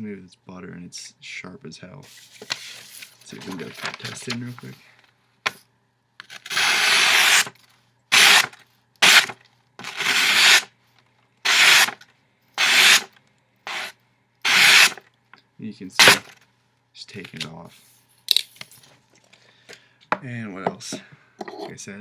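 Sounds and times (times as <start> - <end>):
knife blade rasping through material: 6.4 - 7.5, 8.1 - 10.7, 11.5 - 12.0, 12.6 - 13.1, 14.5 - 15.0.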